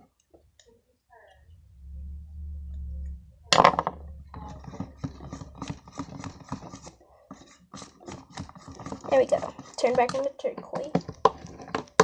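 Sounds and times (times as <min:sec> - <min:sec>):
spoon scraping while stirring: 0:04.5 - 0:10.3.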